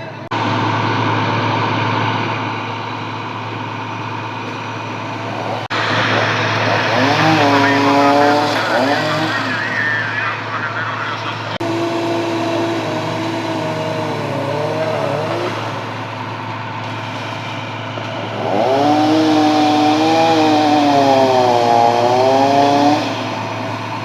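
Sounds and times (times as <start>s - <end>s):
small engine revving: 5.1s - 10.9s, 11.6s - 24.0s.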